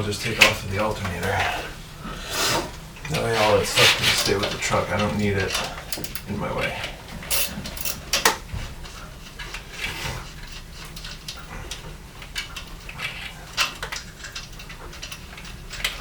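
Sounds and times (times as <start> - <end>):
low steady hum: 0.0 - 16.0
hand tools clinking: 3.0 - 9.6.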